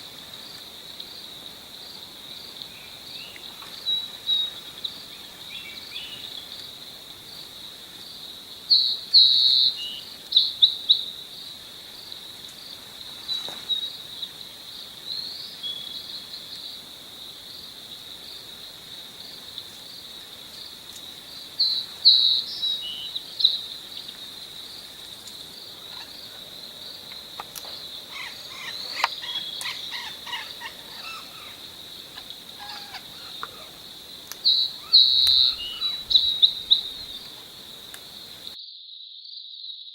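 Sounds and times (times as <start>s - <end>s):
insect drone: 0.0s - 39.8s
soft bird chirping: 27.7s - 33.8s, 34.4s - 37.4s
short high bird calls: 28.1s - 33.8s, 34.4s - 37.2s.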